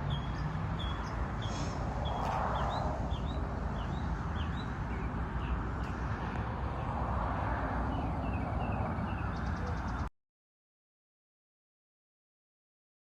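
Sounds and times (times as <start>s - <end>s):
songbird chirping: 0.0s - 6.0s, 7.8s - 10.1s
outdoor background noise: 0.0s - 10.1s.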